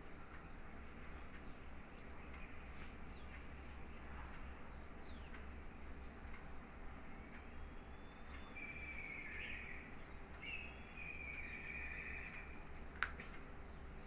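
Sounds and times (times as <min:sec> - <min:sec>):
insect chirping: 0:00.0 - 0:14.0
warbling bird calls: 0:07.3 - 0:14.0.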